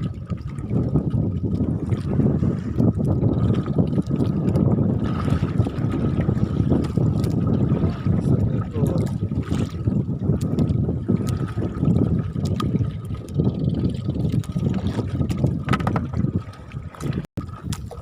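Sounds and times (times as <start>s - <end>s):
rough sea sloshing: 0.0s - 18.0s
wind buffeting microphone: 0.0s - 18.0s
small knocks: 15.7s - 16.1s.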